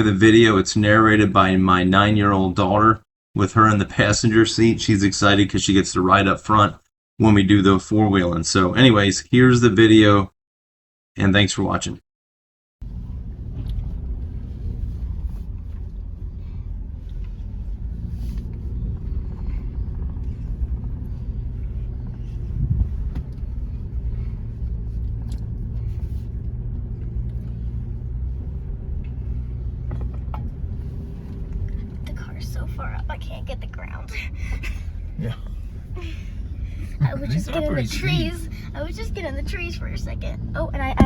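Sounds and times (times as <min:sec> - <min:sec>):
engine and road rumble: 0:12.8 - 0:41.0
vehicle jolt: 0:12.8 - 0:41.0.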